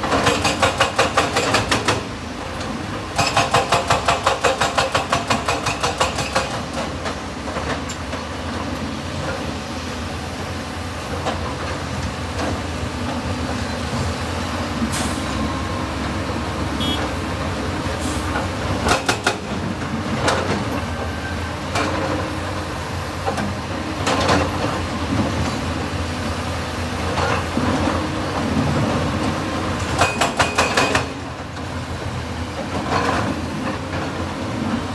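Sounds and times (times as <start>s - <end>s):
excavator engine rumbling: 0.0s - 34.9s.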